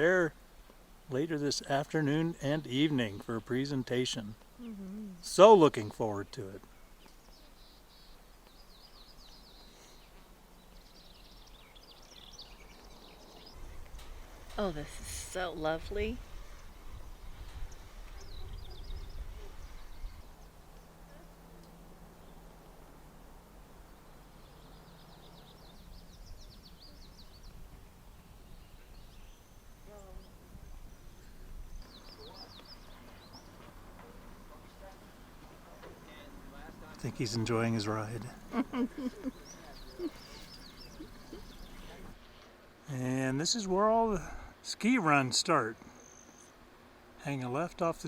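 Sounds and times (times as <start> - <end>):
songbird chirping: 0.0 - 44.0
background hiss: 0.0 - 48.0
low steady hum: 0.0 - 48.0
songbird trilling: 36.2 - 42.2.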